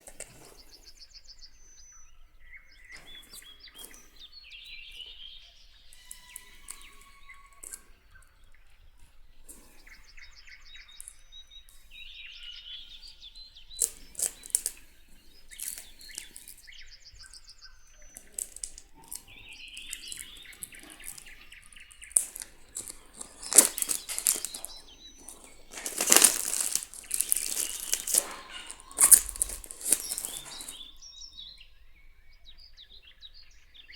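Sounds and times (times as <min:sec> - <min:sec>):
birds chirping: 0:00.0 - 0:31.7
book pages flipping: 0:13.8 - 0:14.8, 0:15.5 - 0:16.6, 0:18.2 - 0:21.4, 0:22.0 - 0:30.8.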